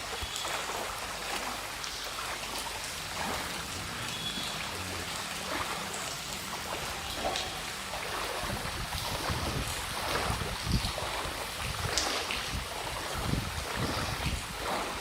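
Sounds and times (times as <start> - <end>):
flood water washing: 0.0 - 15.0
small water splashes: 0.0 - 15.0.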